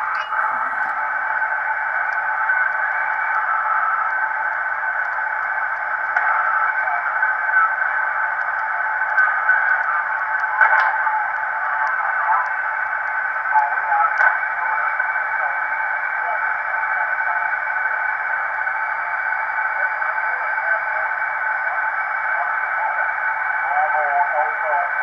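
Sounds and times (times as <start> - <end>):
faint radio voices: 0.0 - 25.0
radio band hiss: 0.0 - 25.0
click: 5.0 - 6.3.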